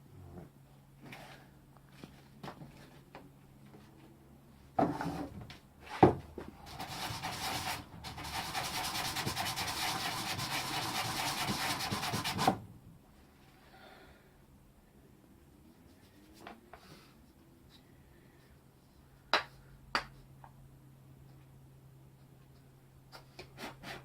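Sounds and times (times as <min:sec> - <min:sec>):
palm sander on wood: 0:06.6 - 0:12.6.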